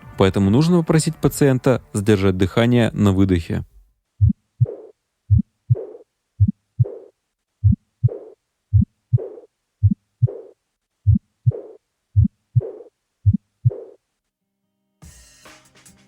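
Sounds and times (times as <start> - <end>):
heartbeat lub-dub: 4.2 - 14.0
soft blowing heart murmur: 4.2 - 14.0.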